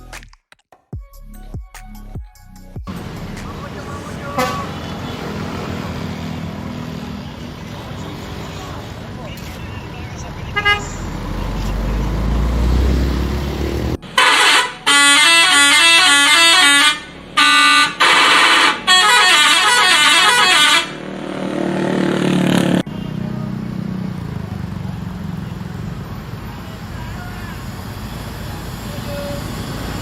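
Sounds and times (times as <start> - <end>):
bus engine rumbling: 2.9 - 30.0
bus horn playing a fast tune: 4.0 - 5.5, 10.5 - 11.2, 14.0 - 21.1.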